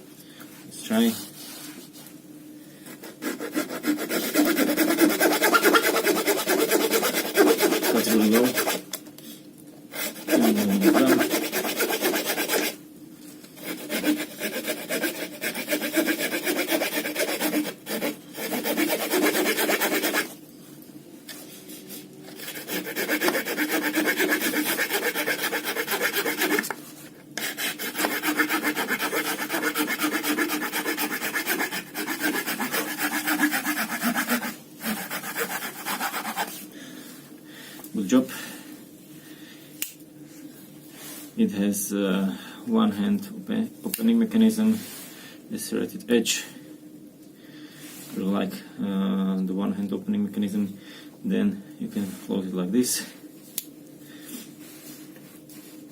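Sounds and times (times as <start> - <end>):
knife saw rasping through wood: 3.0 - 8.8, 9.9 - 12.8, 13.6 - 20.3, 22.4 - 26.8, 27.4 - 36.5.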